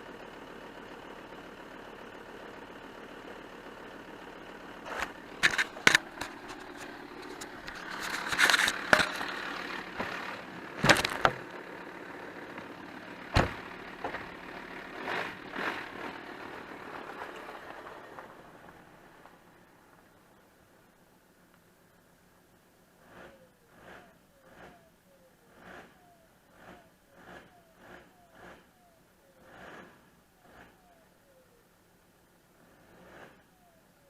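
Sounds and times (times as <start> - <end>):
diesel engine idling: 0.0 - 34.0
sharp knocks and clatters: 4.9 - 9.4, 10.8 - 11.5.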